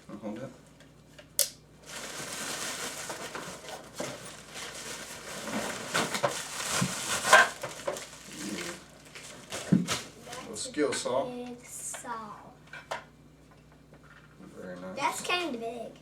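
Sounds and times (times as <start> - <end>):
packaging rustling and crinkling: 1.8 - 10.6.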